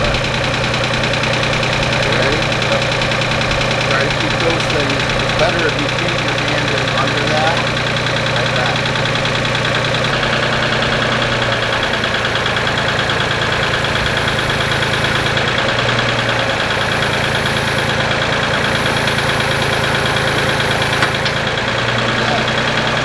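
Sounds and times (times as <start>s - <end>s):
tractor engine running: 0.0s - 23.0s.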